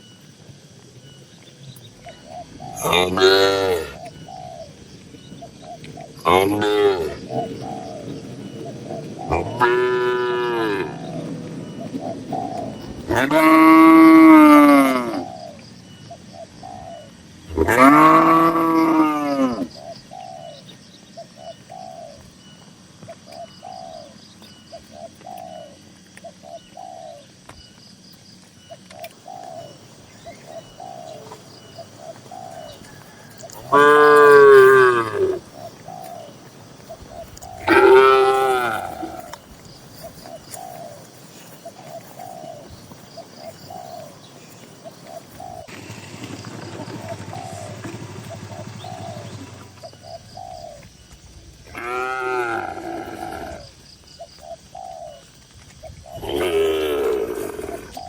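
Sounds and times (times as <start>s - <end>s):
dove cooing softly: 1.8s - 27.3s, 28.6s - 45.7s, 46.6s - 58.0s
cows mooing: 2.8s - 4.0s, 9.3s - 11.3s, 13.0s - 15.2s, 17.5s - 19.7s, 33.3s - 35.5s, 37.6s - 39.4s, 51.7s - 53.8s, 56.2s - 58.0s.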